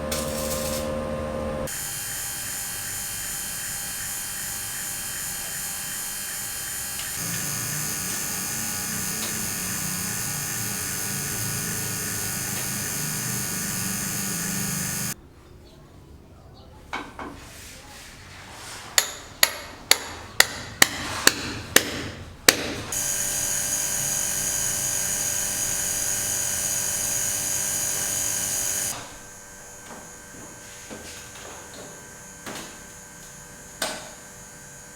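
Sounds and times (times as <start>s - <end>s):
electric buzz: 0.0s - 2.6s, 6.2s - 15.2s, 23.0s - 30.2s.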